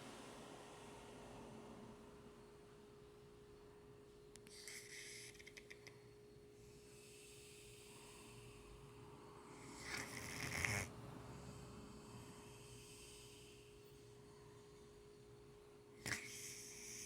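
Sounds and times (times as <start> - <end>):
faint steady hum: 0.0 - 17.0
soft breathing: 4.4 - 17.0
person snoring: 9.6 - 13.7, 16.0 - 17.0.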